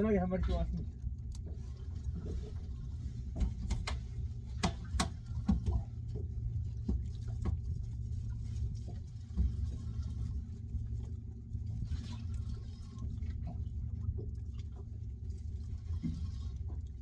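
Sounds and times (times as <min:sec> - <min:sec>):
boat engine hum: 0:00.0 - 0:17.0
sharp clicks and knocks: 0:03.4 - 0:04.0, 0:04.6 - 0:05.8.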